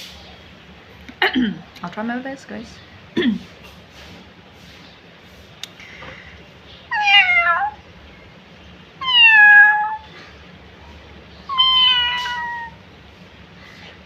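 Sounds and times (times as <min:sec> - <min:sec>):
woman imitating cat meows: 0:11.5 - 0:12.8.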